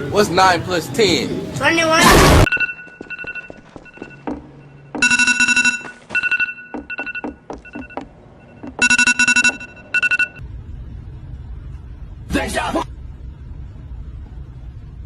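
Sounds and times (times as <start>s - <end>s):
electronic beeping tones: 2.4s - 10.4s.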